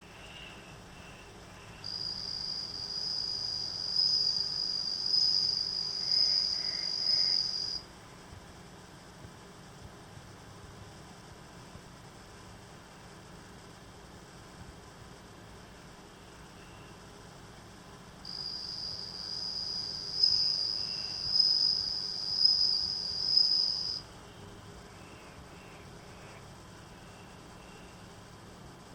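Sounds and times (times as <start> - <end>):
short faint cricket calls: 0.0 - 28.9
cricket trilling: 0.1 - 7.8, 18.2 - 28.4.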